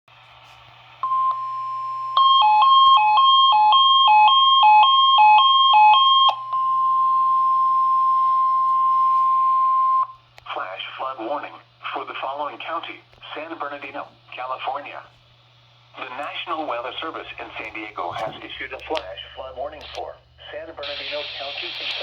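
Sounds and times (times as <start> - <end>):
faint low electrical hum: 0.1 - 22.0
steady high alarm tone: 1.0 - 10.1.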